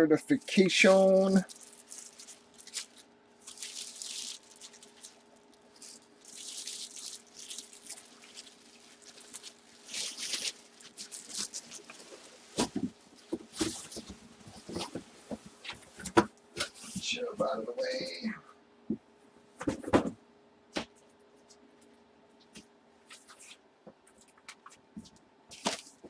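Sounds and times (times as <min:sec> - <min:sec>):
faint steady hum: 0:00.0 - 0:26.0
packaging rustling and crinkling: 0:00.5 - 0:17.0, 0:25.5 - 0:26.0.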